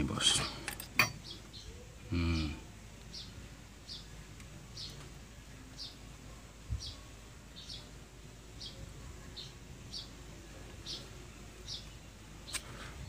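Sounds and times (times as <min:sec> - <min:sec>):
small bird chirping: 0:00.2 - 0:06.1, 0:06.7 - 0:13.0.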